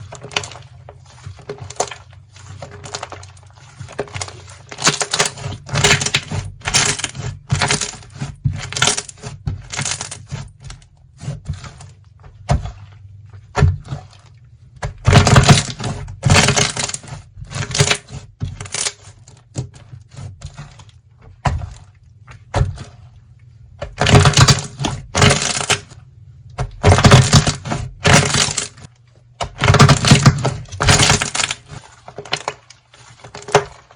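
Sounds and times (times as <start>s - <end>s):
slime clicking and crackling: 1.4s - 10.4s, 23.9s - 25.9s, 26.7s - 28.8s, 29.4s - 33.9s.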